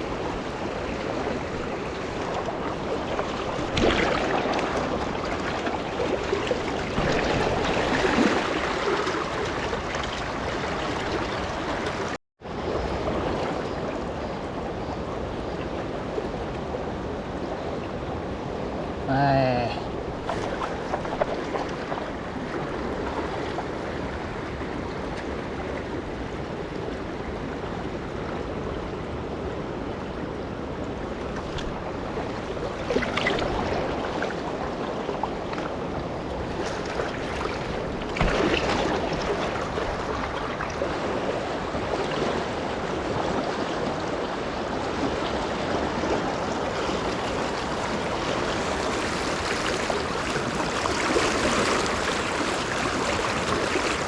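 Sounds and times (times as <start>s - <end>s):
river water rushing over riffle: 0.0s - 12.2s, 31.0s - 54.0s.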